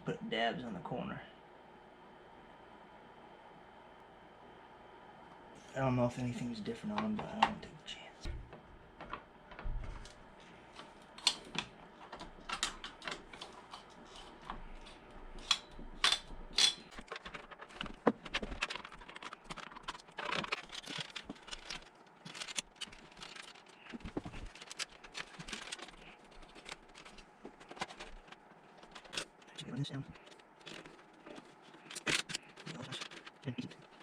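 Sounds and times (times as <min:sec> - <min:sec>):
computer hardware clicks and rattles: 0:08.3 - 0:34.0.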